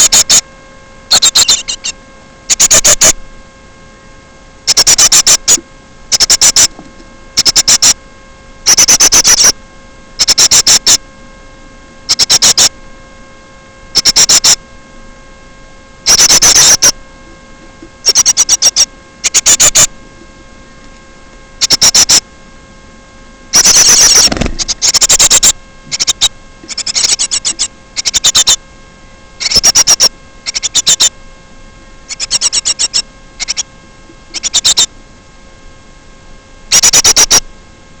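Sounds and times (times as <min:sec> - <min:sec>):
bird chirping high-pitched bursts: 0:00.0 - 0:00.4, 0:01.1 - 0:03.2, 0:04.7 - 0:06.7, 0:07.4 - 0:08.0, 0:08.6 - 0:09.6, 0:10.2 - 0:11.0, 0:12.1 - 0:12.7, 0:13.9 - 0:14.6, 0:16.0 - 0:17.0, 0:18.0 - 0:19.9, 0:21.6 - 0:22.2, 0:23.5 - 0:28.6, 0:29.4 - 0:31.1, 0:32.1 - 0:33.7, 0:34.3 - 0:34.9, 0:36.7 - 0:37.4
electrical hum: 0:00.0 - 0:38.0.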